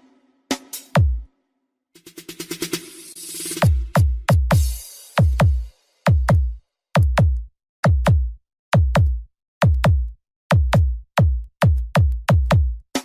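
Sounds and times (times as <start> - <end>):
deep drum machine kicks: 3.6 - 12.8.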